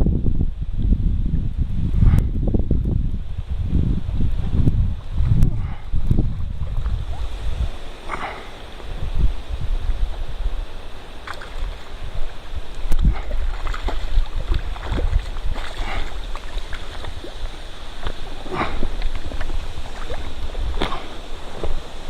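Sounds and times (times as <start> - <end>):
wind buffeting microphone: 0.0 - 22.0
river water rushing: 5.8 - 22.0.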